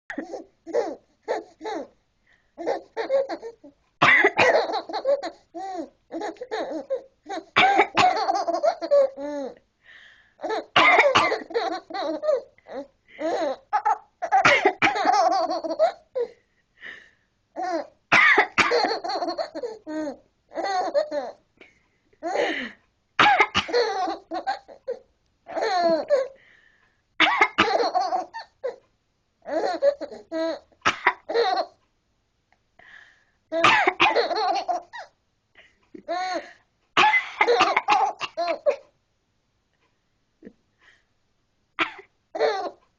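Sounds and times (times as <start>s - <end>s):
baby laughing: 0.1s - 1.9s, 2.6s - 9.6s, 10.4s - 16.4s, 17.6s - 21.4s, 23.6s - 26.4s, 27.6s - 28.8s, 29.5s - 31.8s, 33.5s - 35.1s, 37.4s - 38.8s, 42.3s - 42.8s
person coughing: 4.0s - 4.8s, 7.6s - 8.4s, 10.8s - 11.6s, 14.3s - 15.2s, 18.2s - 19.0s, 22.3s - 23.8s, 33.6s - 34.4s, 37.0s - 38.8s, 41.8s - 42.1s.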